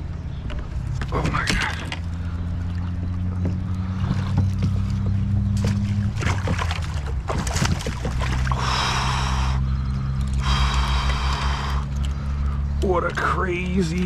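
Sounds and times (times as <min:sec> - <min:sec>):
steady low hum: 0:00.0 - 0:14.0
person breathing hard: 0:08.5 - 0:12.7.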